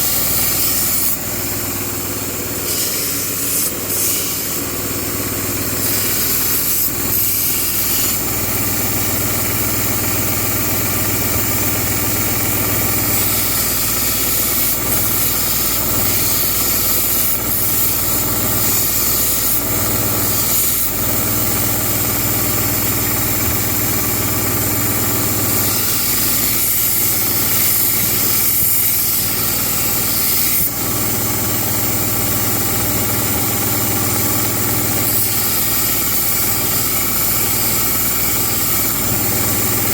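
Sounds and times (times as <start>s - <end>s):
knife blade grinding on belt: 0.0s - 1.4s, 2.6s - 4.8s, 5.7s - 8.5s, 12.8s - 22.8s, 24.4s - 31.2s
belt grinder motor humming: 0.0s - 39.9s.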